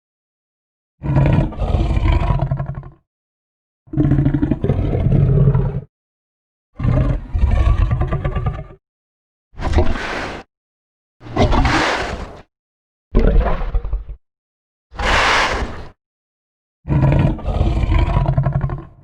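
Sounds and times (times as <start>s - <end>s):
dinosaur roar: 1.0s - 3.0s, 3.9s - 5.9s, 6.8s - 8.8s, 11.2s - 12.5s, 13.2s - 14.2s, 15.0s - 16.0s, 16.9s - 19.0s.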